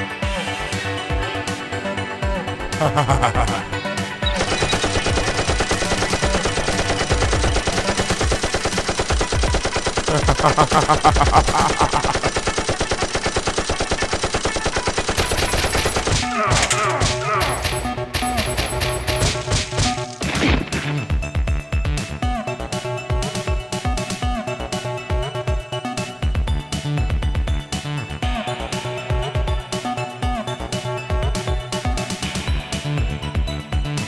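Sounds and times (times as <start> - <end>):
background music: 0.0 - 34.0
rapid automatic gunfire: 4.3 - 20.4.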